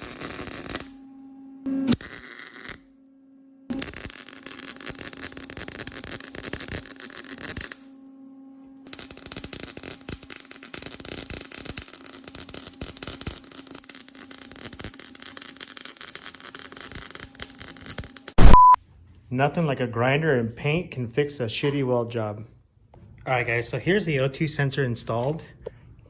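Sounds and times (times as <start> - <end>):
welder arc crackling: 0.0 - 1.0, 1.9 - 2.9, 3.7 - 7.9, 8.9 - 18.6.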